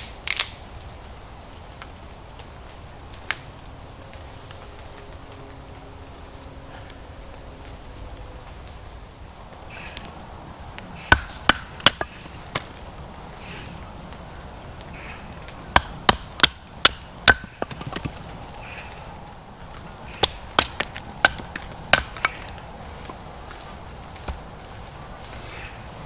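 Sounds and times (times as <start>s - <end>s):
firewood being chopped: 0.0s - 0.6s, 3.1s - 3.5s, 9.7s - 19.0s, 19.6s - 25.5s.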